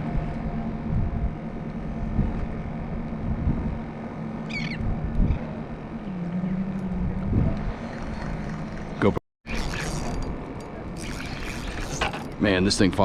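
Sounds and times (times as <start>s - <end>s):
water noise: 0.0s - 12.7s
wind: 0.0s - 13.0s
wavering bird call: 4.4s - 4.8s.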